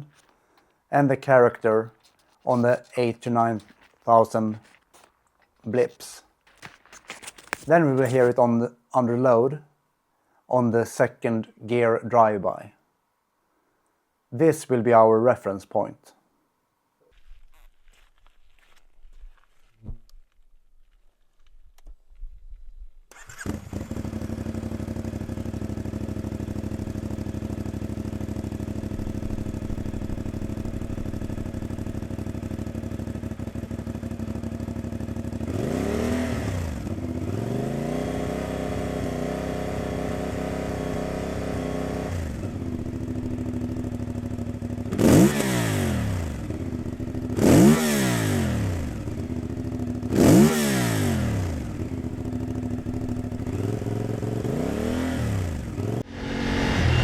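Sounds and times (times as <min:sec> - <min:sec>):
motorcycle engine revving: 0:23.1 - 0:57.0
motorcycle engine idling: 0:23.2 - 0:37.3, 0:38.6 - 0:47.7, 0:48.3 - 0:50.5, 0:51.1 - 0:57.0.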